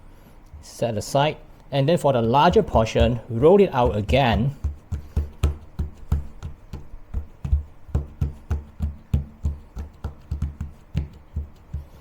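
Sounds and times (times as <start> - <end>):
music with low beat: 3.9 - 12.0.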